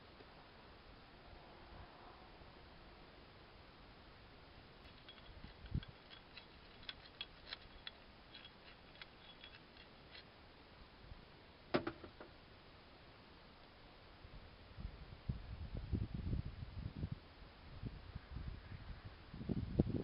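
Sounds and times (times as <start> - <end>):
small metallic clicks and ticks: 4.8 - 10.3.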